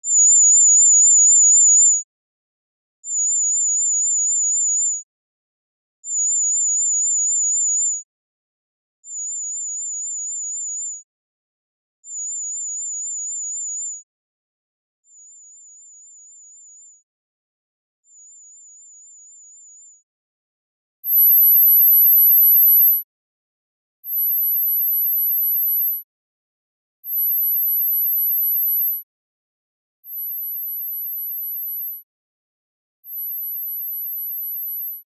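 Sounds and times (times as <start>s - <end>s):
high-pitched warbling test tone beeps: 21.1s - 23.0s.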